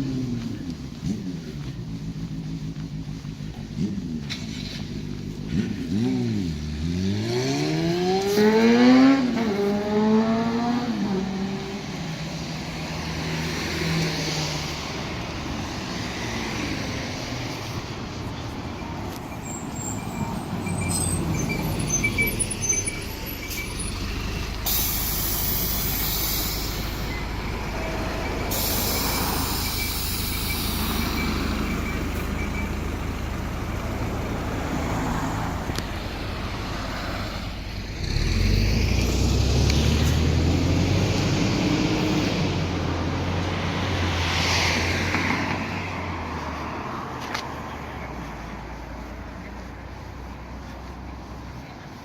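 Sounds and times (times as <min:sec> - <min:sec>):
bus engine rumbling: 0:00.0 - 0:52.0
air hissing: 0:22.5 - 0:32.6.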